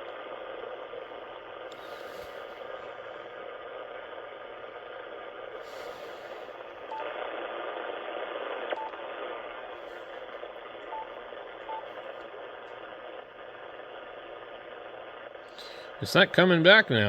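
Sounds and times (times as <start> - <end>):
radio static hiss: 0.0 - 17.0
short high beeps: 11.7 - 11.9.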